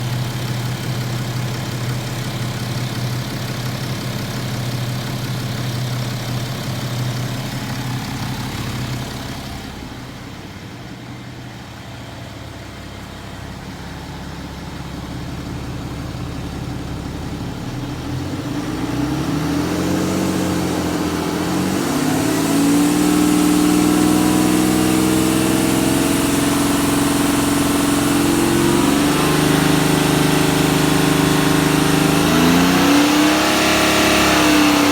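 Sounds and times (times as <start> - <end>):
engine tapping: 0.0 - 19.0
diesel engine running and revving: 0.0 - 34.9.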